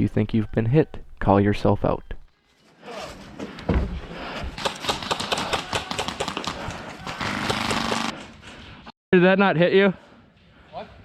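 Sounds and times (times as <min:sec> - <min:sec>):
airsoft guns firing: 0:04.6 - 0:08.1.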